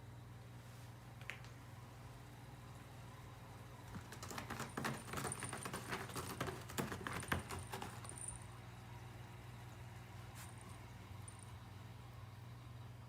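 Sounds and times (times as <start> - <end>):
cat claws scratching cardboard: 3.9 - 8.4.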